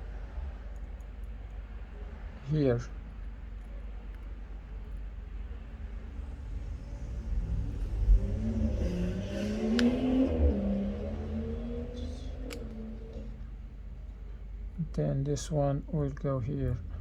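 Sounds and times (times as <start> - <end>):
vehicle engine revving: 6.1 - 14.2
sharp click: 12.3 - 12.8.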